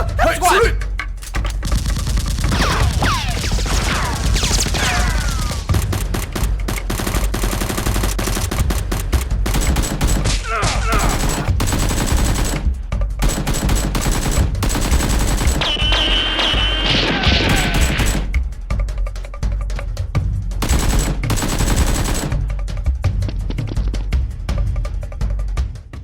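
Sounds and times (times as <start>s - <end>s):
automatic gunfire: 1.2s - 18.4s, 20.6s - 22.6s.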